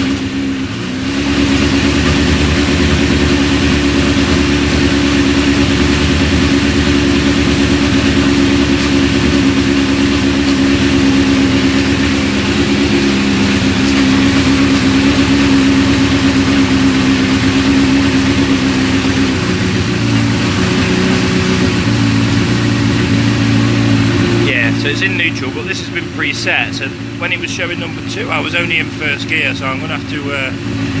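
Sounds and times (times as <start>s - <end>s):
motorcycle engine idling: 0.0s - 31.0s.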